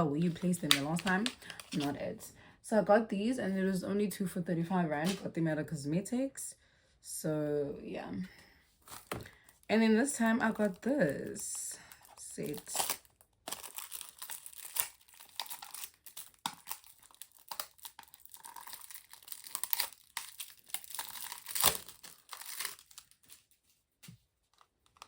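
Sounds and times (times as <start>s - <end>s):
packaging crinkling and tearing: 0.2s - 2.0s, 10.5s - 25.0s.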